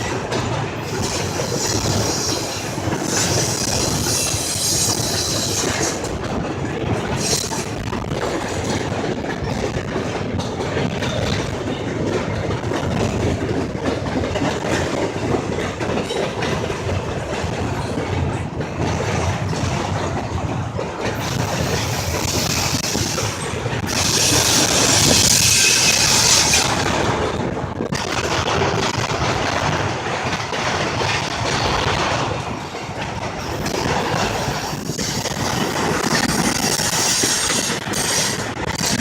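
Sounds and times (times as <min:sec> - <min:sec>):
freight train rolling past: 0:00.0 - 0:39.0
steel wheels clattering over rail joints: 0:00.0 - 0:39.0.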